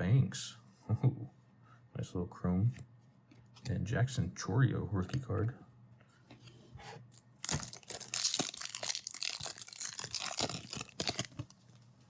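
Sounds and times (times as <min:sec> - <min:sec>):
foil wrapper crinkling and tearing: 0:07.1 - 0:11.6.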